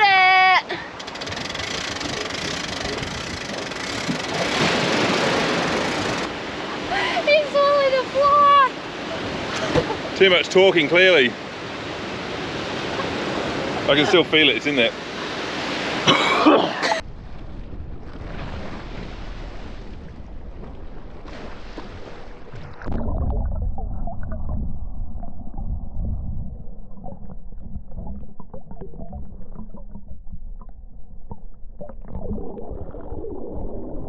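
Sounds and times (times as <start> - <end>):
water gurgling: 1.0 - 11.6, 12.6 - 34.0
muffled low rumbling: 17.0 - 34.0.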